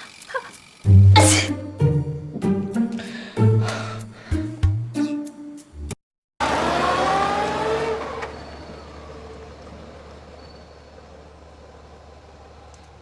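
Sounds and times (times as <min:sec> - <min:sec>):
vehicle engine accelerating: 0:06.4 - 0:10.4.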